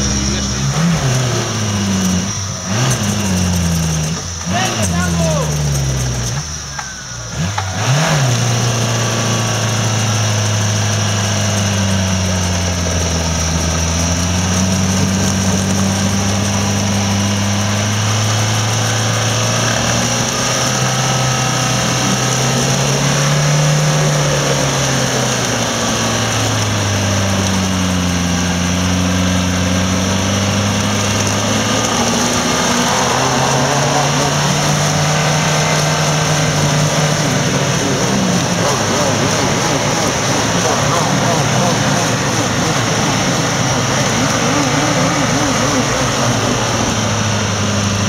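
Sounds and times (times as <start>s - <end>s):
engine revving under load: 0.0s - 48.0s.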